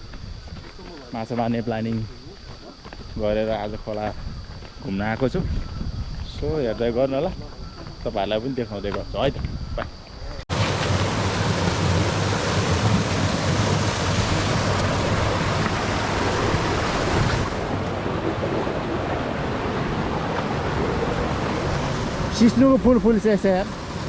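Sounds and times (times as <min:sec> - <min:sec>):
fast river water rushing: 0:10.5 - 0:24.0.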